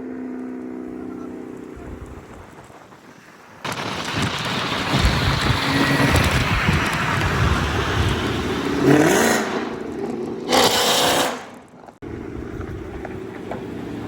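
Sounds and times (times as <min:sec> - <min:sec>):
wind on microphone: 0:01.7 - 0:09.3.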